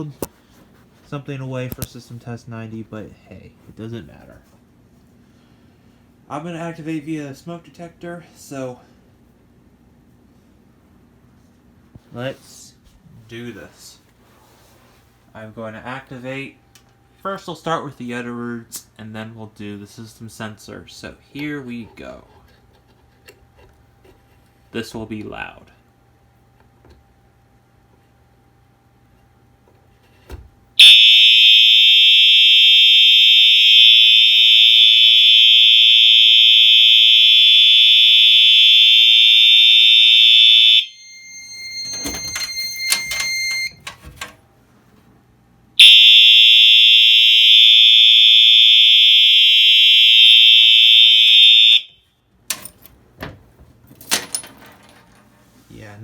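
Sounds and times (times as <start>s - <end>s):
fire alarm horn steady tone: 30.8s - 43.8s, 45.8s - 52.2s.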